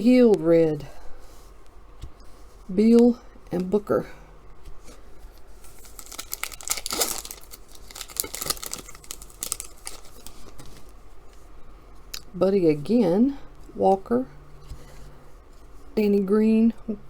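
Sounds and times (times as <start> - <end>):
plastic wrapper crinkling and tearing: 5.4 - 11.0.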